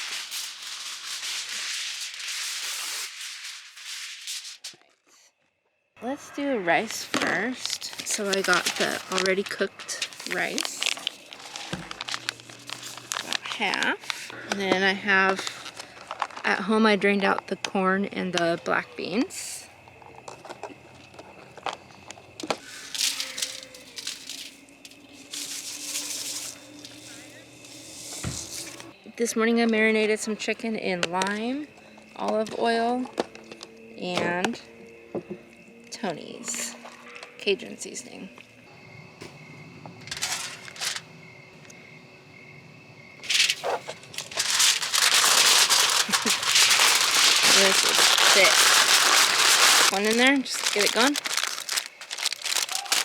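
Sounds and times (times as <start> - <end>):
rustling bursts: 0.0 - 4.8, 6.9 - 14.4, 22.6 - 28.8, 40.1 - 41.0, 43.2 - 53.0
foil crinkling: 0.0 - 4.9, 6.8 - 16.6, 22.4 - 28.9, 40.0 - 41.0, 43.2 - 53.0
crickets trilling: 0.0 - 53.0.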